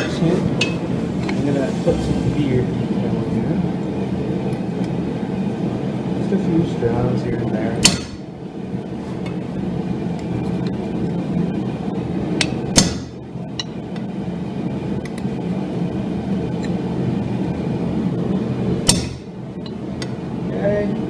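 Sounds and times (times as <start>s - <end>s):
low rushing noise: 0.0s - 4.6s.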